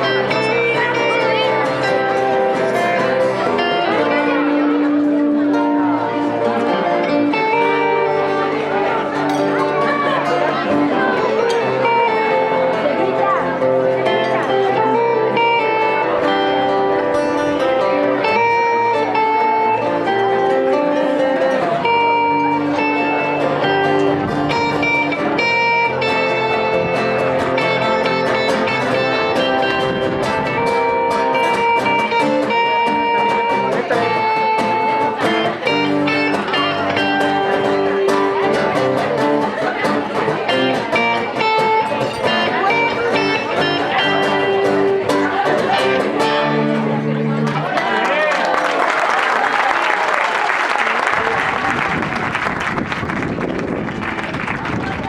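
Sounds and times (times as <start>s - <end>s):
guitar-led music: 0.0s - 48.4s, 51.2s - 55.0s.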